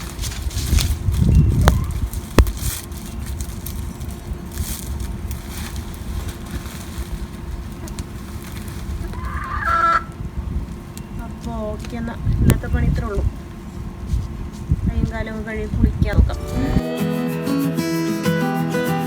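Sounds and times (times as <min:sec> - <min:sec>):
wind rumbling on microphone: 0:00.0 - 0:16.8.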